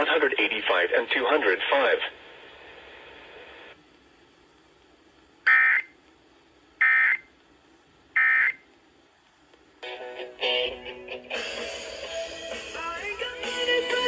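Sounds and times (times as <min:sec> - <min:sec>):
radio hiss: 0:00.0 - 0:09.6
two-tone digital data warble: 0:05.5 - 0:05.9.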